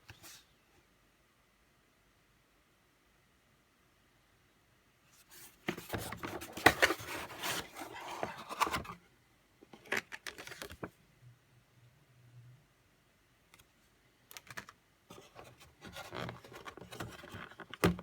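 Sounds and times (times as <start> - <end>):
packaging scraping and rustling: 5.7 - 9.0.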